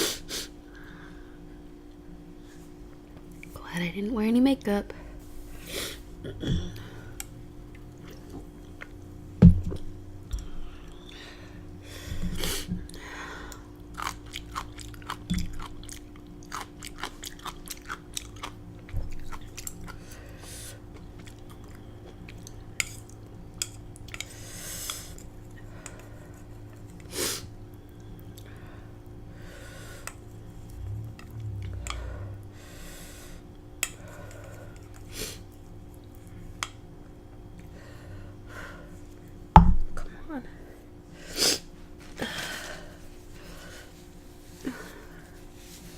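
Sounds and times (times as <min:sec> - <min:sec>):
person chewing food: 0:12.9 - 0:24.4
food crunching: 0:13.5 - 0:20.0.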